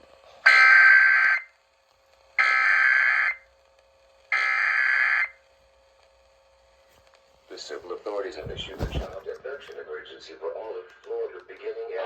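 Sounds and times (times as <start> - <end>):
screeching digital data tones: 2.4 - 3.4, 4.4 - 5.4.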